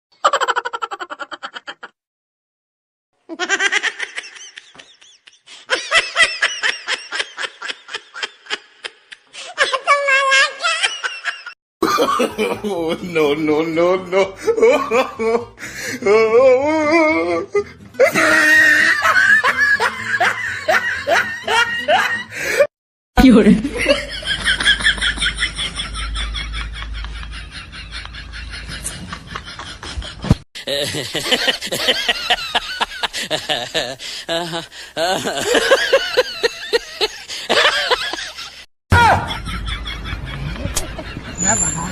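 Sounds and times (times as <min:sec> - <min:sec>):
rapid pulsing laugh: 0:23.8 - 0:41.4.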